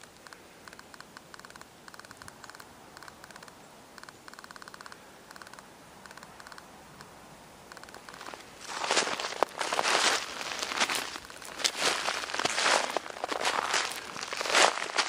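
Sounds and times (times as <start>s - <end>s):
footsteps crunching in snow: 8.0s - 15.0s.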